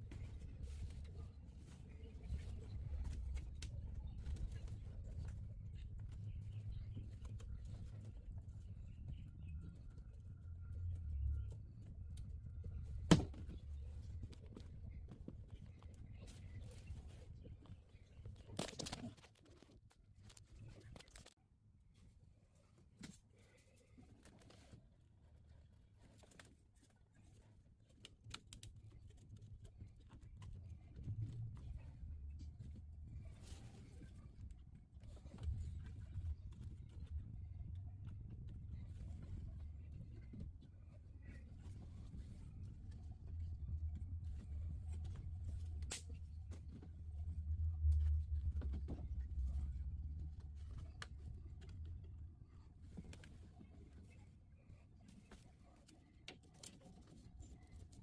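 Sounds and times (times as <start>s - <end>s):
low rumble: 41.9s - 52.5s.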